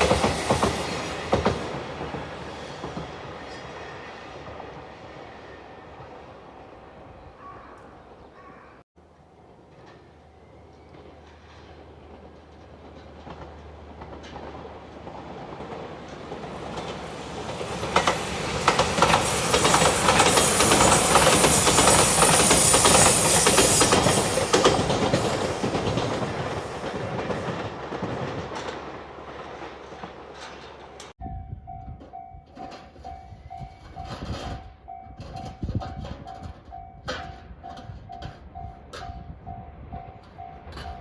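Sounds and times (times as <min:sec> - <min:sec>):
electric train passing: 0:00.0 - 0:07.3, 0:09.0 - 0:41.0
wheel clicks over rail joints: 0:29.9 - 0:31.1.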